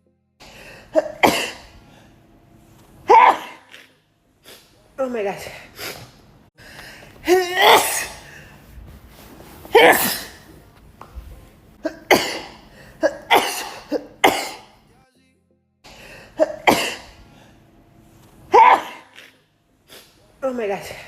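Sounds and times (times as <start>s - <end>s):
woman sneezing: 0.9s - 1.7s, 3.0s - 6.1s, 7.2s - 8.4s, 9.7s - 10.5s, 11.8s - 14.7s, 16.4s - 17.2s, 18.5s - 21.0s
quick breaths: 5.6s - 7.3s.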